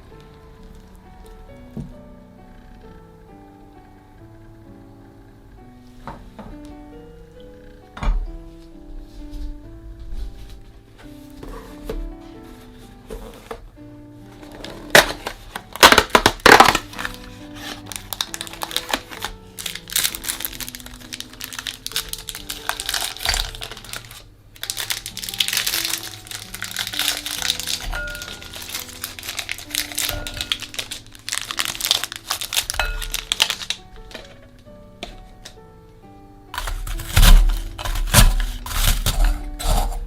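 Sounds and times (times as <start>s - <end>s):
background music: 0.0s - 40.0s
biscuits crunching in plastic bag: 14.3s - 34.5s, 36.6s - 40.0s.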